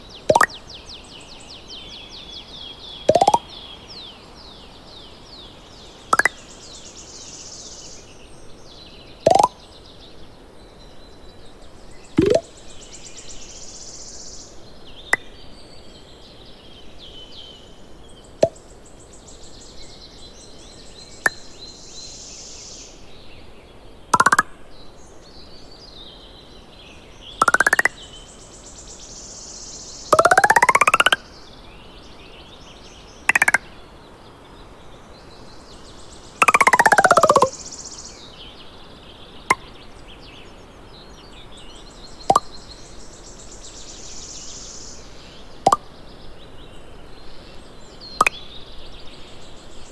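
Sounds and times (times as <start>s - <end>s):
sharp clicks: 0.3s - 0.5s, 3.1s - 3.4s, 9.3s - 9.5s, 12.2s - 12.4s, 24.2s - 24.5s, 27.4s - 27.9s, 30.2s - 31.2s, 33.3s - 33.6s, 36.4s - 37.5s
cartoon pops sweeping upward: 0.3s - 0.6s, 3.1s - 3.5s, 6.2s - 6.4s, 9.3s - 9.6s, 12.2s - 12.5s, 24.2s - 24.5s, 27.4s - 27.9s, 30.2s - 31.2s, 33.3s - 33.6s, 36.4s - 37.5s
high chirps: 0.3s - 0.6s, 3.1s - 3.5s, 6.2s - 6.4s, 9.3s - 9.6s, 12.2s - 12.5s, 24.2s - 24.5s, 27.4s - 28.0s, 30.2s - 31.2s, 33.3s - 33.6s, 36.4s - 37.6s.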